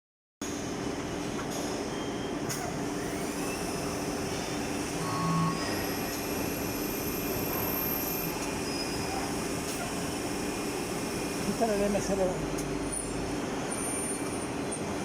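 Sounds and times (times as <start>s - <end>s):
thin high whine: 1.9s - 9.3s
lathe machine running: 2.4s - 13.8s.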